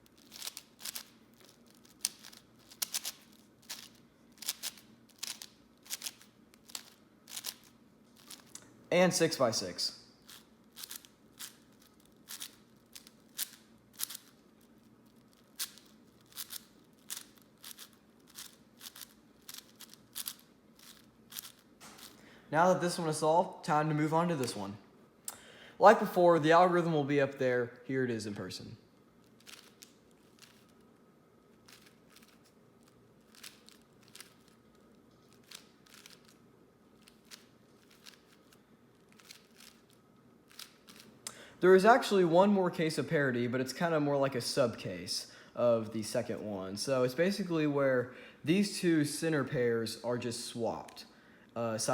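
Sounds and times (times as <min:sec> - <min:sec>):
puzzle cube clicking and scraping: 0:00.0 - 0:08.6, 0:10.3 - 0:22.2, 0:29.3 - 0:30.7, 0:31.6 - 0:34.6, 0:35.3 - 0:36.4, 0:37.0 - 0:41.1
puzzle cube layers clicking: 0:29.4 - 0:30.6, 0:33.3 - 0:34.6, 0:35.4 - 0:36.3, 0:37.0 - 0:39.9.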